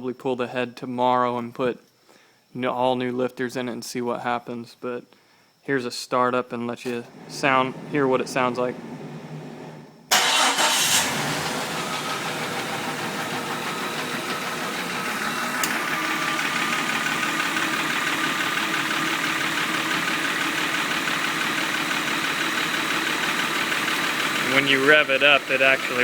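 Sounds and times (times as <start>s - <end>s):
car engine cranking and idling: 6.9s - 26.0s.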